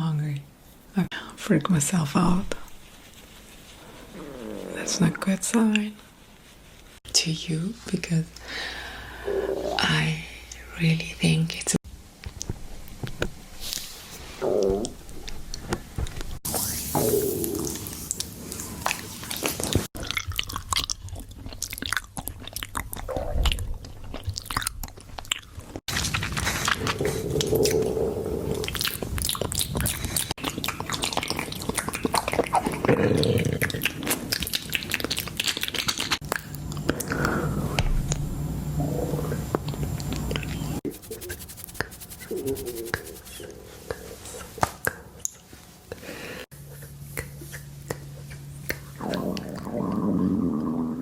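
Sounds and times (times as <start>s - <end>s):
stomach gurgling and growling: 3.8s - 5.3s, 14.4s - 16.4s, 19.4s - 40.6s, 48.9s - 51.0s
crackling and clicking: 40.8s - 43.4s.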